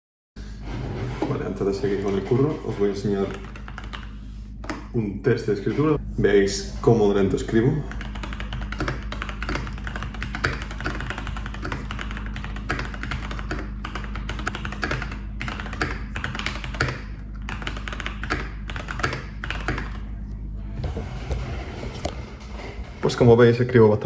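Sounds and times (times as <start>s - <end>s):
mechanical keyboard typing: 2.8s - 4.1s, 7.9s - 20.0s.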